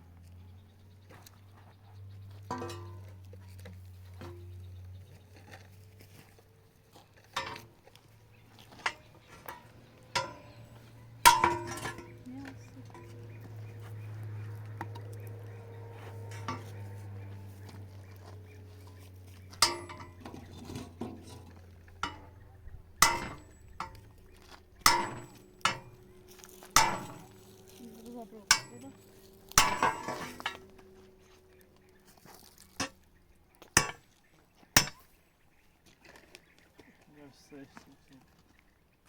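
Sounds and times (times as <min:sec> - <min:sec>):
low steady hum: 0:00.0 - 0:34.0
metallic clanks and knocks: 0:02.2 - 0:05.7, 0:07.2 - 0:31.3, 0:32.6 - 0:34.1, 0:34.8 - 0:35.0.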